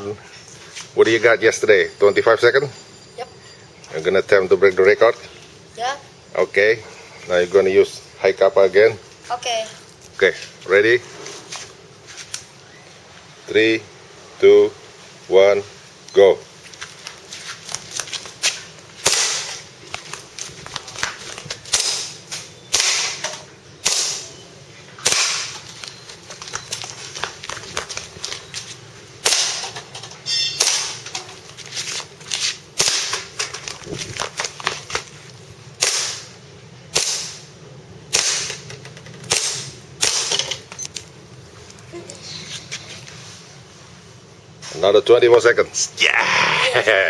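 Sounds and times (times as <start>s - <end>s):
airsoft pistol shots: 19.0s - 19.6s, 21.7s - 24.3s, 25.0s - 25.6s, 29.2s - 29.8s, 30.4s - 31.0s, 32.8s - 33.3s, 35.8s - 36.3s, 36.9s - 37.5s, 38.1s - 38.6s, 39.3s - 40.5s.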